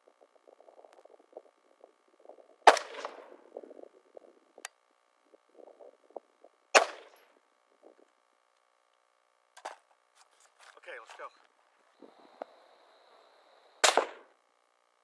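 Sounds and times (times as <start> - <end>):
rifle shots with echo: 2.6 - 3.3, 6.7 - 7.2, 13.8 - 14.3.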